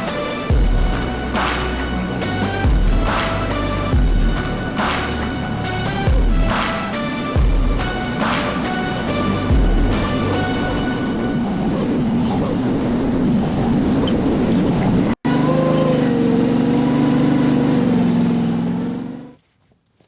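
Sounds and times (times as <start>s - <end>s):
skid steer engine droning: 15.2s - 19.4s.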